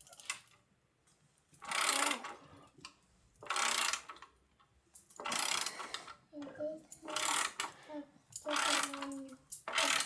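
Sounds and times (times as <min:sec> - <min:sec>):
hand ratchet clicking: 0:01.6 - 0:02.4, 0:03.4 - 0:04.3, 0:05.0 - 0:06.0, 0:07.0 - 0:07.8, 0:08.4 - 0:10.0.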